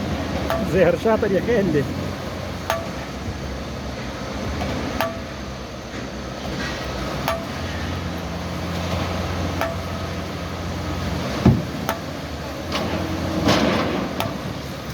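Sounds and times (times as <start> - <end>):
diesel engine running: 0.0 - 14.9
heavy thump: 11.4 - 11.8.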